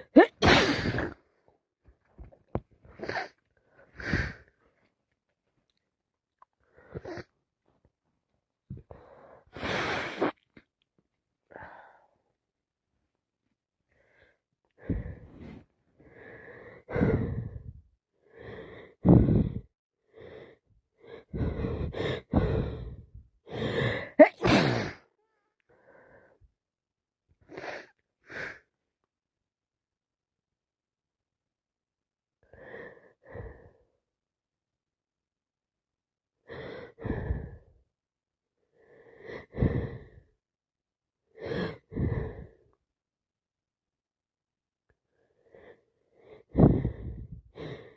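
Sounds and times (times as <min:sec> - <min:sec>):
person sneezing: 0:00.0 - 0:01.2, 0:24.2 - 0:25.1
wheezy breaths: 0:13.9 - 0:25.1, 0:36.4 - 0:37.8, 0:38.8 - 0:40.3, 0:41.3 - 0:42.8, 0:45.2 - 0:47.9.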